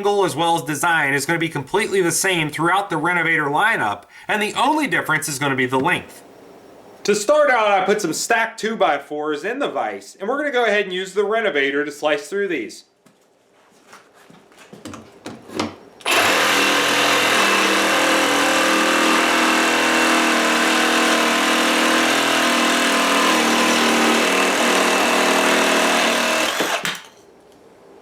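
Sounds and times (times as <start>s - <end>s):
reciprocating saw cutting wood: 16.0s - 26.9s.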